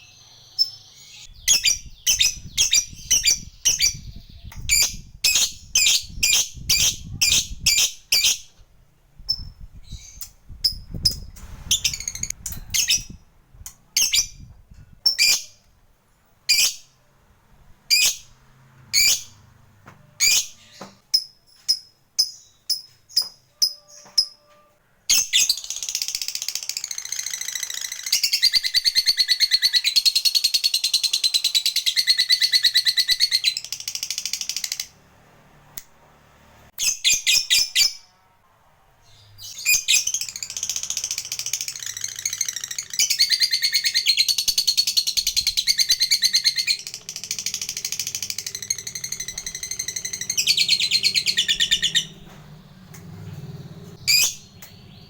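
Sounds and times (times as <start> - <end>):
lovebird chattering trills: 39.6 - 52.3.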